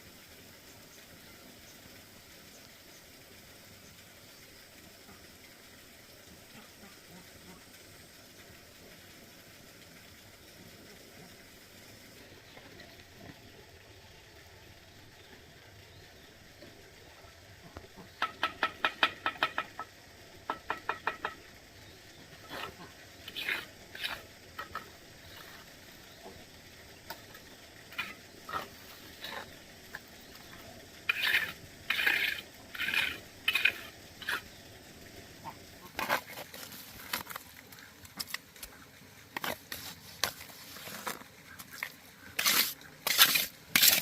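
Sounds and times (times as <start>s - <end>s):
faint steady background noise: 0.0s - 44.0s
scraping strokes: 22.4s - 25.7s, 31.1s - 34.5s, 39.4s - 44.0s.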